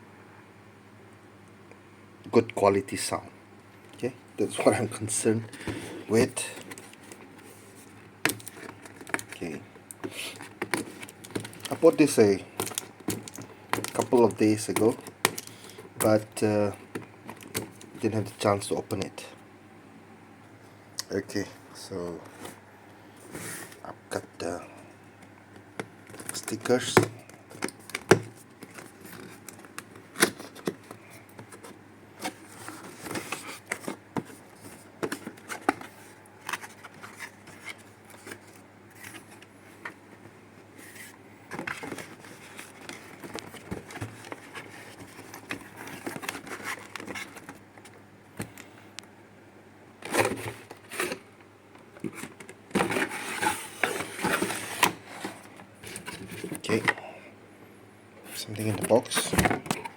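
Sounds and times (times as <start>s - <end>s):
cardboard packaging being opened: 40.8s - 47.7s, 50.0s - 51.3s, 52.0s - 57.0s.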